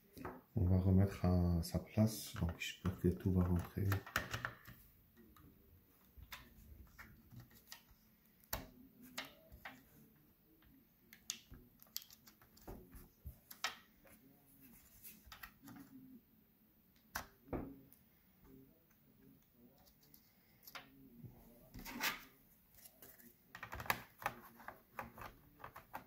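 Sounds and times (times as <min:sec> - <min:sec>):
clicks and knocks of laptop parts: 0:03.6 - 0:04.8, 0:23.5 - 0:26.0.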